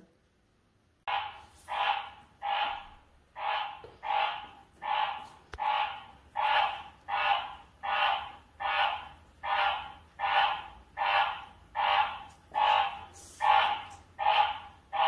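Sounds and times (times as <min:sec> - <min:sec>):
frog calling: 0:01.1 - 0:15.0.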